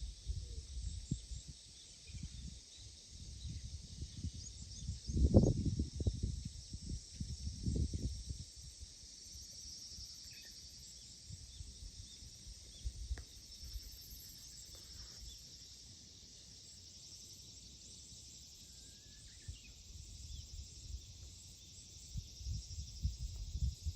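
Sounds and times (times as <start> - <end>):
insects trilling: 0.0 - 23.9
faint bird chirps: 0.2 - 5.6, 10.0 - 15.7, 18.6 - 21.7.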